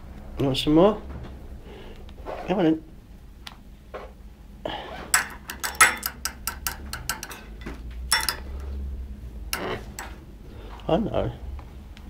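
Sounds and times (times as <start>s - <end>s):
spoon tapping against bowl: 5.2s - 8.6s, 9.6s - 10.2s.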